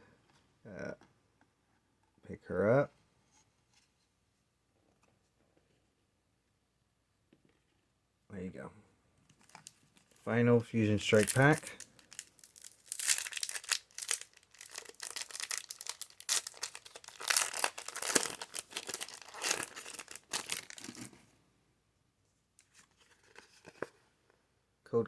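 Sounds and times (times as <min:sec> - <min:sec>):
foil wrapper tearing and crinkling: 0:11.0 - 0:21.1.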